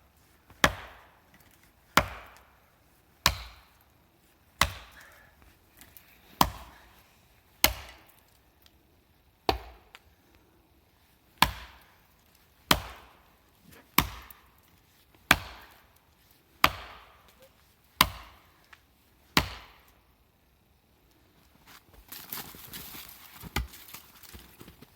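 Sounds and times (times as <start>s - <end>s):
axe chopping wood: 0.5s - 1.2s, 1.9s - 2.5s, 3.2s - 3.7s, 4.6s - 5.1s, 6.4s - 6.8s, 7.6s - 8.2s, 9.5s - 9.9s, 11.4s - 11.9s, 12.7s - 13.2s, 13.9s - 14.5s, 15.3s - 15.9s, 16.6s - 17.3s, 18.0s - 18.4s, 19.4s - 19.9s, 23.4s - 24.0s.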